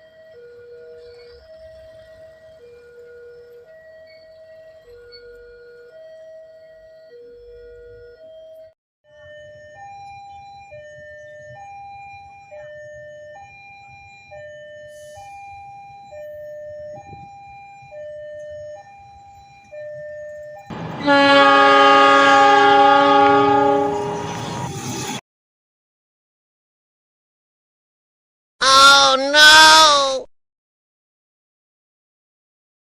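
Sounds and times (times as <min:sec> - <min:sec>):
train horn blaring: 0:20.7 - 0:24.9.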